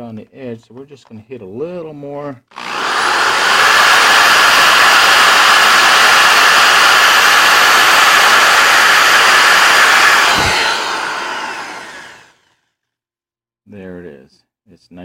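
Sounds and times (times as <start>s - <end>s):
power drill whirring: 2.5s - 12.6s.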